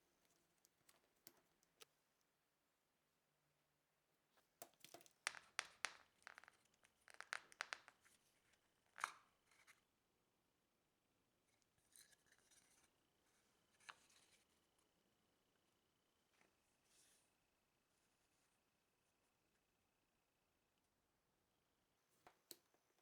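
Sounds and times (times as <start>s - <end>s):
small objects clicking and tapping: 0.2s - 1.9s, 4.4s - 8.2s, 22.2s - 22.8s.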